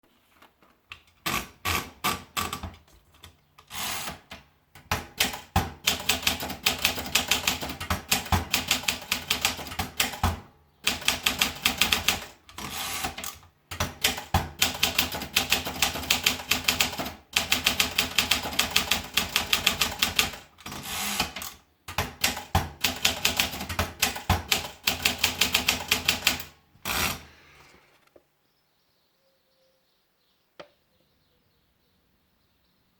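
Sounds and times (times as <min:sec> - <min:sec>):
manual typewriter keystrokes: 0:00.9 - 0:27.2.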